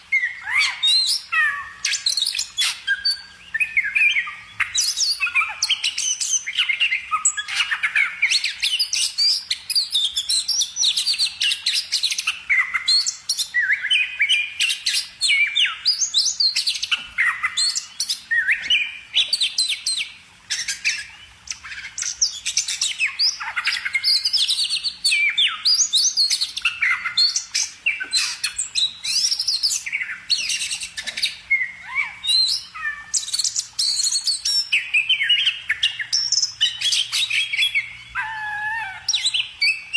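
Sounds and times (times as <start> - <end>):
bird song with chirps and trills: 0.0 - 39.9.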